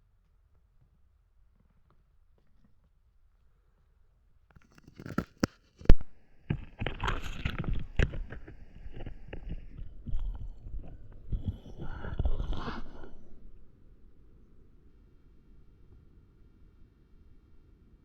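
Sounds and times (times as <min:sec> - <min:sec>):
microphone handling noise: 0:04.9 - 0:13.7.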